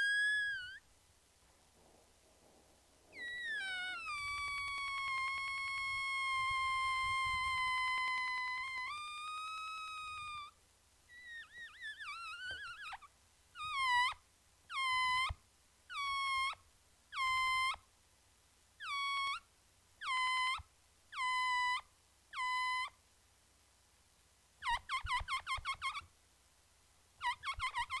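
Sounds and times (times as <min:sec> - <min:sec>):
balloon squealing as it deflates: 0:00.0 - 0:00.8, 0:03.2 - 0:10.5, 0:11.1 - 0:15.3.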